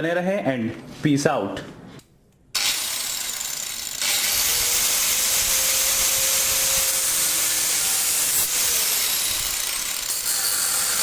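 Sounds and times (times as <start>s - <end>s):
angle grinder cutting metal: 2.6s - 11.0s.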